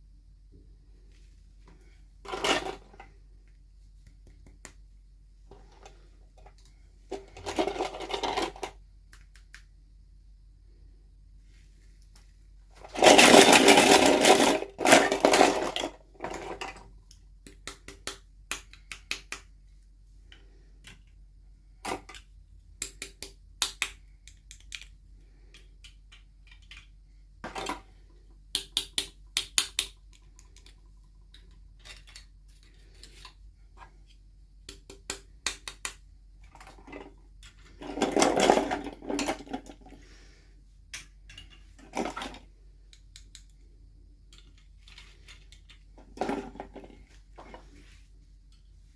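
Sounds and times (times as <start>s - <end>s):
small plastic pieces clicking: 12.9s - 19.5s, 21.8s - 27.0s, 28.5s - 33.4s, 34.7s - 39.8s, 40.9s - 43.6s, 44.3s - 46.8s.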